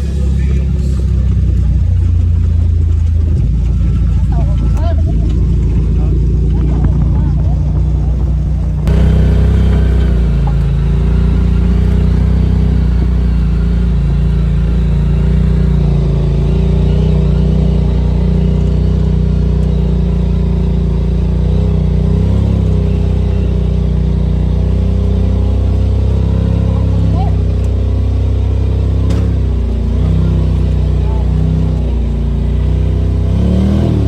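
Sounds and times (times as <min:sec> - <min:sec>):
utility vehicle engine running: 0:00.0 - 0:34.0.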